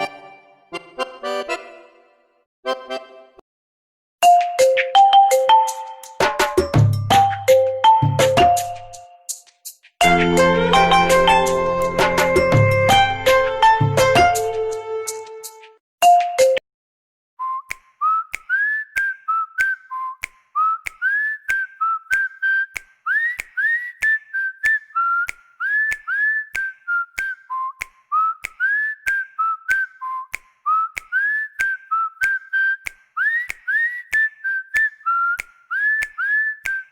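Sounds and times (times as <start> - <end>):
whistled ringtone melody: 4.2 - 9.3, 10.0 - 14.5.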